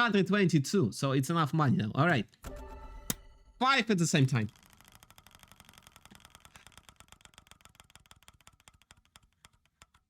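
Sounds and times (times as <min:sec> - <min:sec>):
rapid ticking of spinner: 0:04.0 - 0:10.0.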